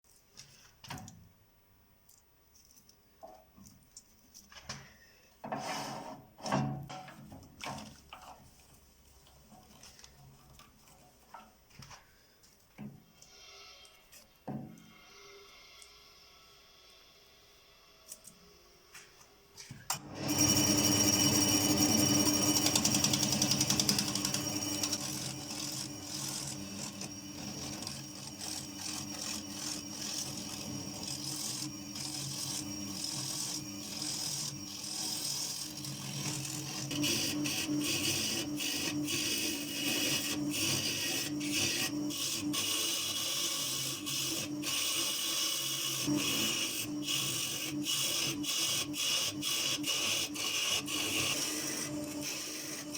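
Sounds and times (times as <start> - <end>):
power tool cutting wood: 19.9 - 52.9.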